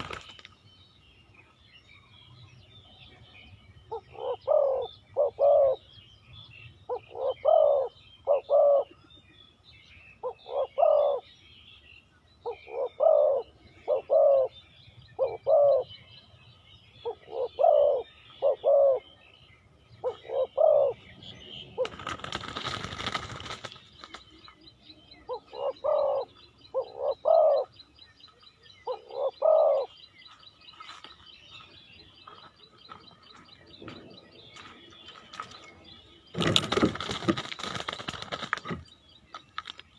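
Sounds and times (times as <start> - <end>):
small birds chirping: 0.0 - 39.9
dove cooing: 3.9 - 5.9, 6.9 - 9.0, 10.2 - 11.2, 12.4 - 14.6, 15.2 - 16.0, 17.0 - 19.1, 20.0 - 21.1, 25.1 - 27.8, 28.6 - 30.0.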